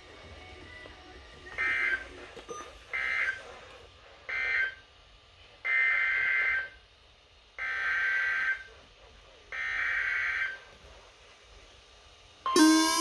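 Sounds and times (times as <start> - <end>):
digital data bursts buzzing: 12.5 - 13.0.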